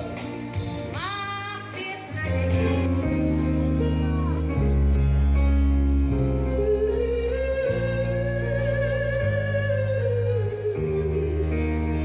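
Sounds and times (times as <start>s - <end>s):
live pop-rock band music: 0.0s - 12.0s.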